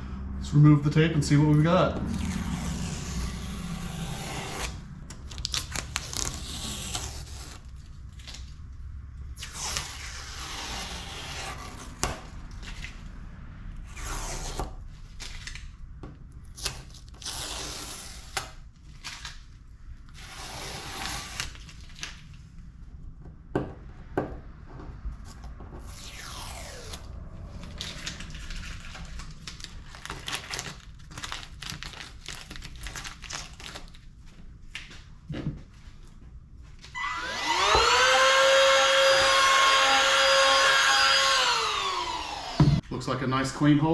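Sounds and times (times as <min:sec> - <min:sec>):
masking tape peeling: 0:02.1 - 0:08.7, 0:09.4 - 0:13.1, 0:13.8 - 0:15.7, 0:16.4 - 0:19.5, 0:20.1 - 0:22.4, 0:25.3 - 0:34.0.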